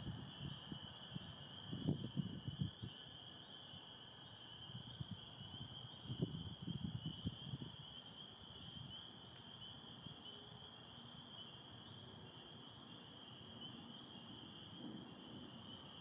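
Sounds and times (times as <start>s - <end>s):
chorus of peeping frogs: 0.0s - 16.0s.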